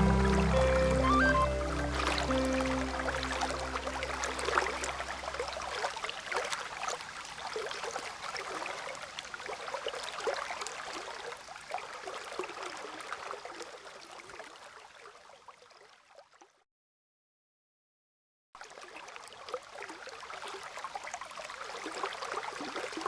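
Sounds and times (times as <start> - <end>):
held low music notes: 0.0 - 5.4
water trickling and gurgling: 0.0 - 16.6, 18.6 - 23.0.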